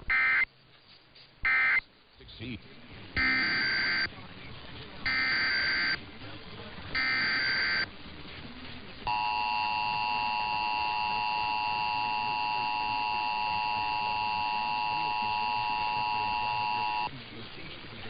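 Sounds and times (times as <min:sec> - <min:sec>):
two-tone alert signal: 0:03.2 - 0:04.1, 0:05.1 - 0:06.0, 0:07.0 - 0:07.9, 0:09.1 - 0:17.1
warbling data screech: 0:03.2 - 0:04.1, 0:05.1 - 0:06.0, 0:07.0 - 0:07.9, 0:09.1 - 0:17.1.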